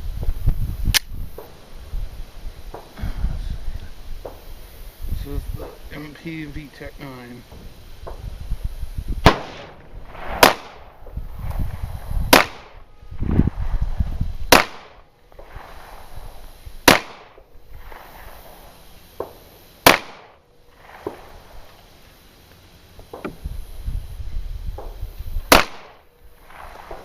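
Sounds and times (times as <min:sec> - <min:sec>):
pistol shots: 0:09.2 - 0:11.0, 0:12.3 - 0:12.8, 0:14.5 - 0:15.0, 0:16.8 - 0:17.4, 0:19.2 - 0:21.4, 0:25.5 - 0:27.0
faint gunshots: 0:09.2 - 0:11.6, 0:12.3 - 0:12.8, 0:14.5 - 0:15.8, 0:16.8 - 0:18.4, 0:19.2 - 0:21.5, 0:24.8 - 0:27.0.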